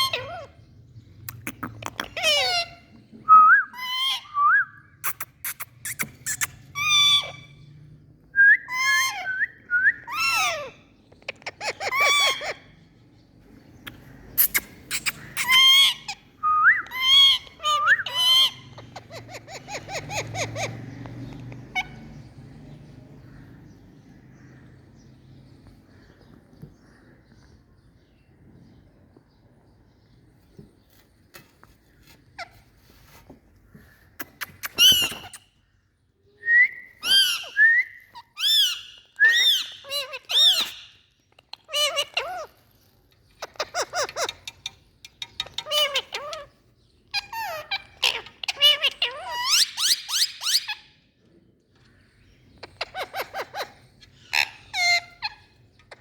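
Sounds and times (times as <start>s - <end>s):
parrot high-pitched calls: 0.0s - 0.6s, 1.7s - 3.0s, 3.7s - 4.4s, 5.0s - 7.6s, 8.6s - 12.8s, 14.4s - 20.9s, 34.6s - 35.5s, 36.9s - 44.6s, 45.4s - 51.0s, 52.6s - 56.0s
parrot chattering clicks: 1.3s - 2.4s, 5.0s - 6.7s, 13.8s - 15.9s, 34.2s - 35.4s, 43.4s - 46.5s
parrot squawks: 1.7s - 2.8s, 11.6s - 12.7s, 14.4s - 16.2s, 37.0s - 42.5s, 47.1s - 50.8s, 52.7s - 56.0s
parrot whistles: 36.4s - 39.8s.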